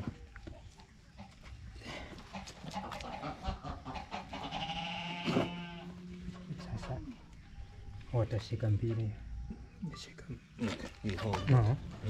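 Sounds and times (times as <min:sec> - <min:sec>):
breathy lamb noises: 0:01.2 - 0:06.5.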